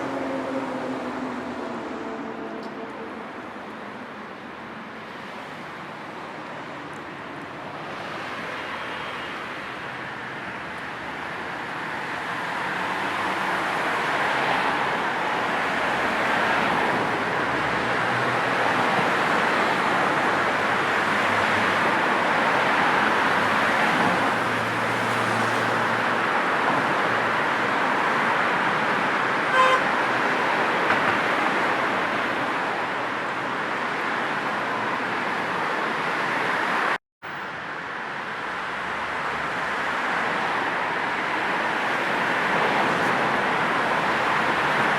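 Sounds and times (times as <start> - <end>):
road traffic passing: 0.0 - 44.9
car horn toot: 29.5 - 29.9.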